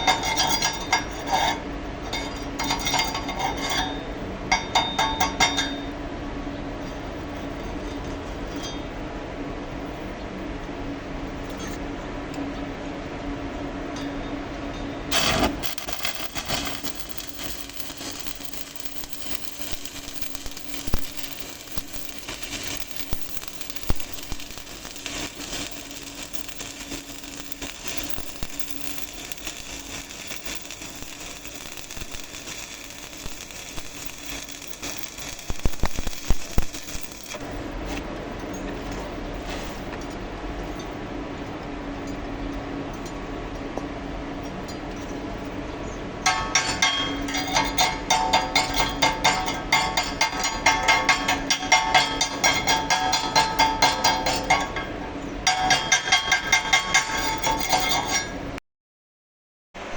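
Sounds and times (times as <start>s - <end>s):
steady hum: 8.5s - 58.6s
welding arc crackling: 15.1s - 38.1s, 46.3s - 54.9s, 55.5s - 58.5s.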